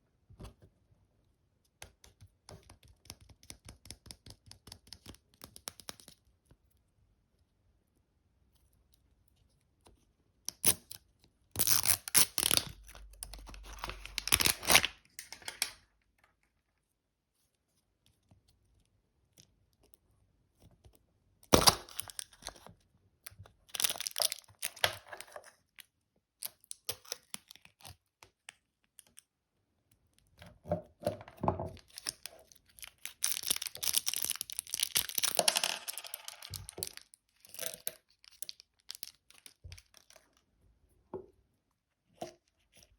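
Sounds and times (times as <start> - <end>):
wrapper tearing and crinkling: 11.6 - 15.8, 23.7 - 25.2, 31.9 - 40.1.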